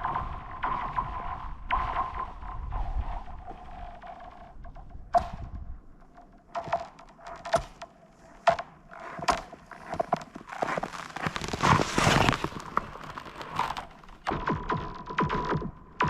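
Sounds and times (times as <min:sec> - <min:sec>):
ice cracking and pinging: 0:08.4 - 0:14.3
skate blades scraping ice: 0:08.9 - 0:14.2.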